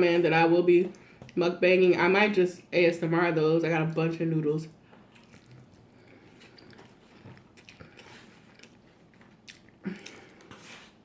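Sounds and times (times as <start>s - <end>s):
person chewing food: 4.9s - 11.0s.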